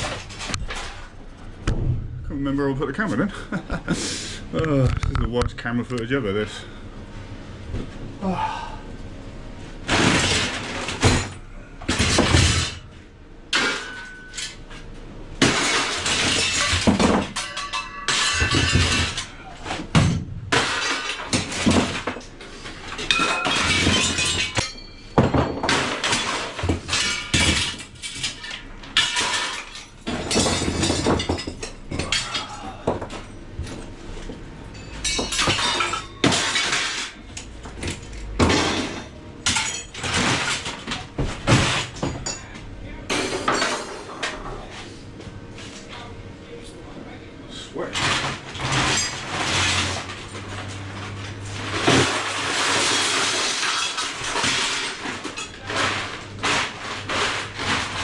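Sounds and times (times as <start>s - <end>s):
scrap metal crashing and clanking: 0.0s - 1.2s, 9.8s - 44.4s, 47.8s - 58.0s
glass breaking: 9.9s - 12.8s, 13.5s - 14.6s, 15.4s - 22.2s, 23.0s - 32.6s, 34.7s - 37.3s, 38.4s - 42.5s, 48.0s - 50.4s, 51.6s - 58.0s.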